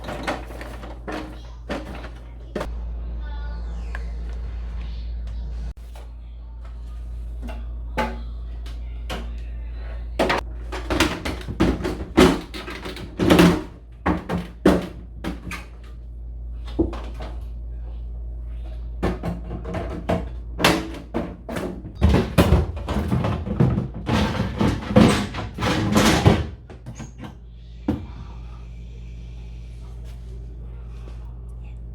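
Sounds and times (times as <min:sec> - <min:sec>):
containers and shelves clattering: 0:00.0 - 0:02.7, 0:07.3 - 0:09.5, 0:10.1 - 0:16.0, 0:16.6 - 0:17.5, 0:18.6 - 0:28.1
steady low hum: 0:00.0 - 0:31.9.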